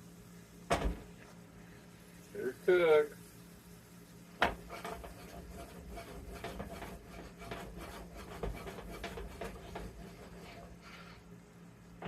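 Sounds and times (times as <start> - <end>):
steady low hum: 0.0 - 12.0
utensil knocking on pan: 4.4 - 10.4
utensil scraping pan: 4.4 - 11.2.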